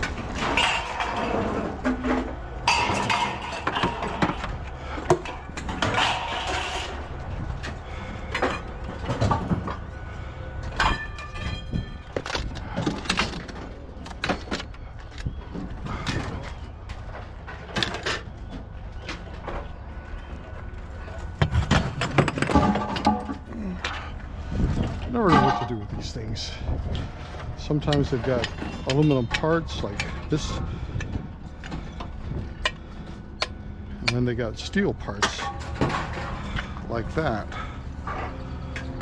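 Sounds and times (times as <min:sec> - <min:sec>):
scrap metal knocking and clinking: 0:00.0 - 0:07.3, 0:21.0 - 0:26.0
steady low rumble: 0:18.4 - 0:39.0.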